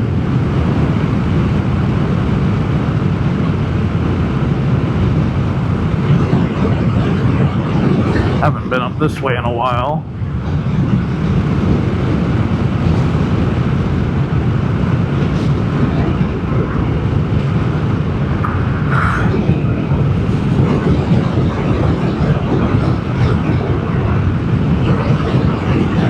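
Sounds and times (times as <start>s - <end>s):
wind rumble: 0.0s - 26.0s.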